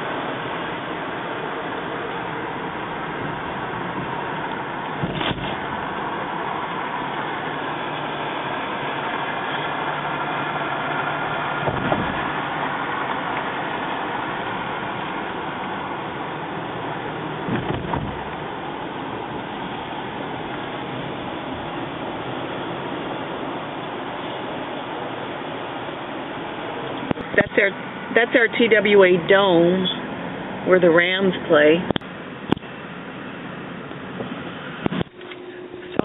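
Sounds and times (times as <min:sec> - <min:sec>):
road and engine noise inside car: 0:00.0 - 0:36.0.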